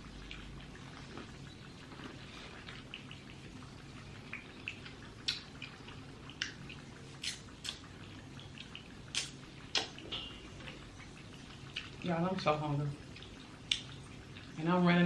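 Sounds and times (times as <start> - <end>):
wet chewing: 0.2 - 3.4, 4.2 - 10.0, 10.6 - 12.0, 13.0 - 14.6
lip smacks: 4.3 - 10.1, 11.6 - 12.0, 13.1 - 14.5.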